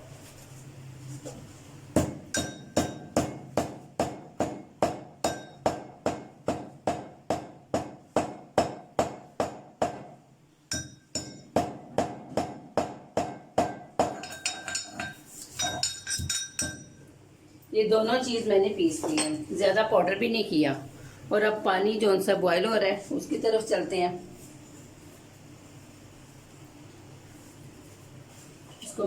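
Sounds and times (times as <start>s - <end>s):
mortar and pestle pounding: 2.0s - 16.9s.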